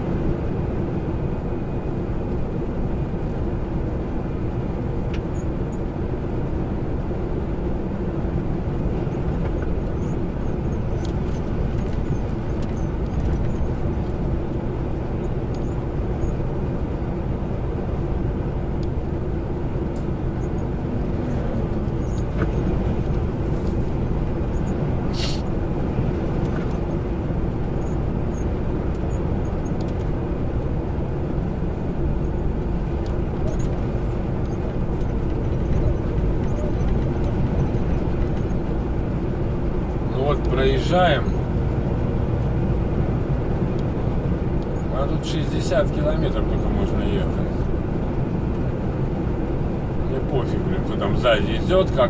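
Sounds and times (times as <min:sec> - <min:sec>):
truck engine and road rumble: 0:00.0 - 0:52.0
short air hiss: 0:25.1 - 0:25.5.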